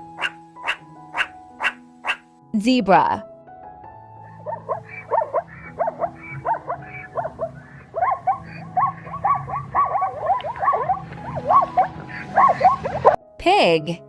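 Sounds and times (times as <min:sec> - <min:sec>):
zebra barking yelps: 0:00.1 - 0:02.3, 0:04.2 - 0:13.2.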